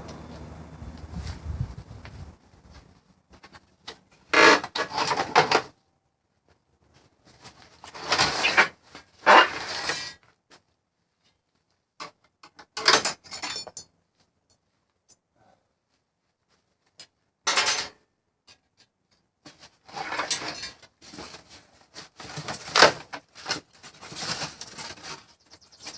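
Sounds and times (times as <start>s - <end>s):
metal parts clattering and scraping: 4.1s - 5.8s, 7.4s - 10.2s, 12.0s - 13.9s, 17.5s - 18.8s, 19.5s - 25.9s.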